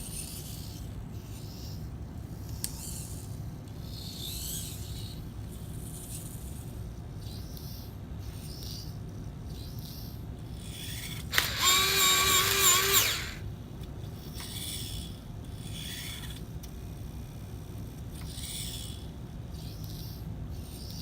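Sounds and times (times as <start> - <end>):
pencil sharpener motor grinding: 10.7 - 13.5.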